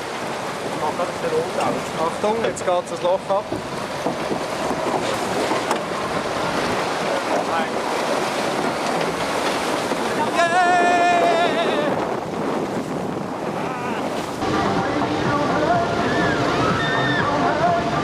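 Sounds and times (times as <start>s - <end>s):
rushing noise of water or wind: 0.0s - 18.0s.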